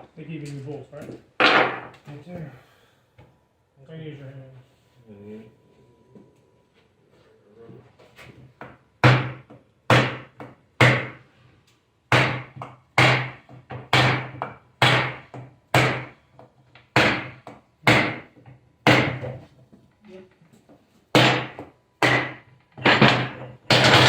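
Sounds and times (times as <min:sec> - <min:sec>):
hammer blows ringing on metal: 0:09.0 - 0:11.2, 0:12.1 - 0:16.2, 0:16.9 - 0:19.2, 0:21.1 - 0:24.0.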